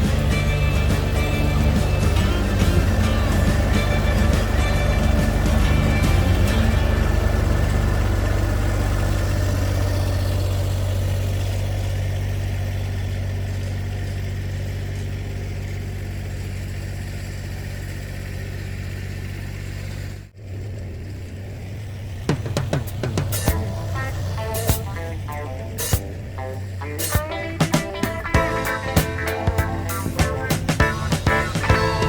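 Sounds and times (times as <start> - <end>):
tractor diesel engine running: 0.0 - 32.0.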